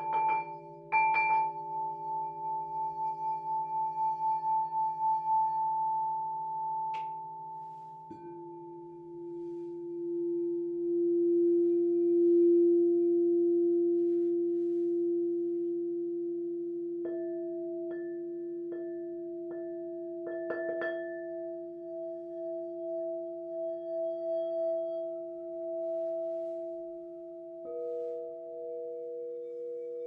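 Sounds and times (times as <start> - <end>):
singing bowl struck: 0.0 - 7.3, 8.1 - 13.7
crystal singing bowls ringing: 0.0 - 30.0.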